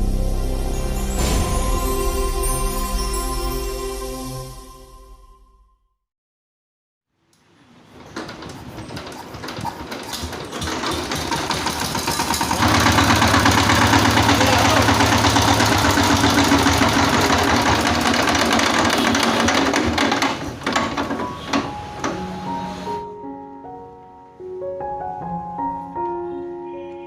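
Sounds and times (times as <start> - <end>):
diesel engine clattering: 8.3 - 22.3.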